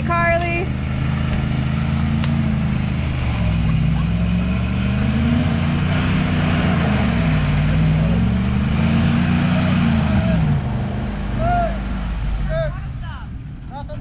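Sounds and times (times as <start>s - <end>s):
truck engine revving under load: 0.0s - 13.7s.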